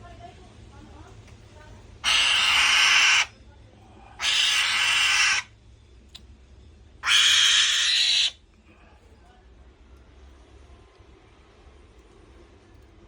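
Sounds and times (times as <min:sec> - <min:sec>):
bird of prey hissing calls: 0:02.0 - 0:03.3, 0:04.2 - 0:05.5, 0:07.0 - 0:08.4.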